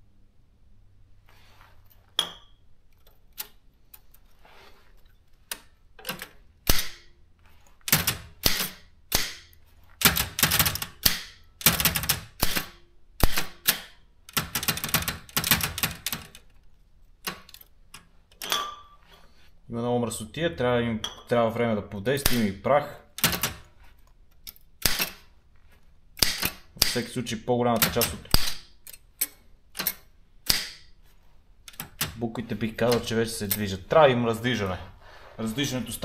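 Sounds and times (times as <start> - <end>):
typewriter typebars clacking: 7.9 - 9.4, 10.0 - 16.4, 23.1 - 23.7, 27.8 - 28.6, 31.7 - 32.2.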